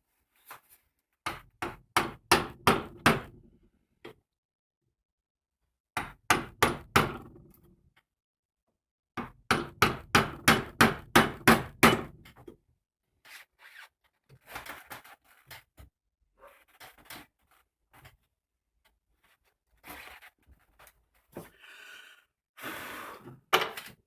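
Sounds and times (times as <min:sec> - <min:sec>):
hammering on wood: 0:01.3 - 0:03.4, 0:06.0 - 0:07.3, 0:09.2 - 0:12.2.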